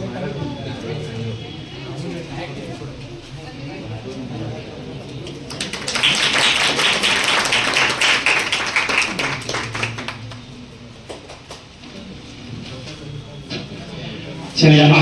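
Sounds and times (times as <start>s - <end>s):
audience clapping: 5.3s - 11.9s.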